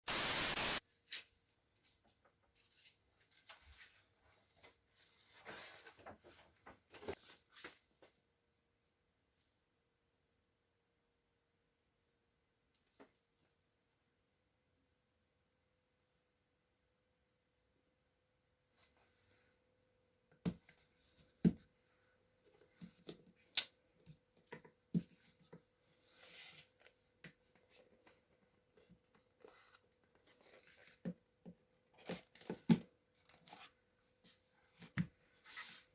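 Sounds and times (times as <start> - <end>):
loud burst of hiss: 0.1 - 0.8.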